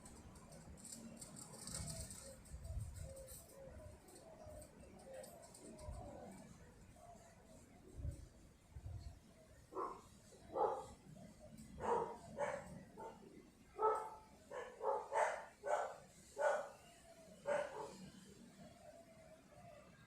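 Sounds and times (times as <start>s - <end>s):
dog barking: 9.7s - 10.9s, 11.8s - 16.8s, 17.4s - 18.0s.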